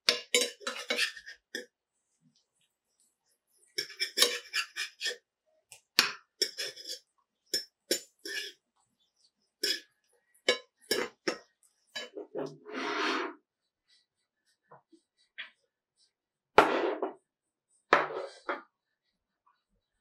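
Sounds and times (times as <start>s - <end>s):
dishes and utensils clinking: 0.0s - 1.7s, 3.7s - 5.2s, 6.0s - 8.6s, 9.6s - 12.6s.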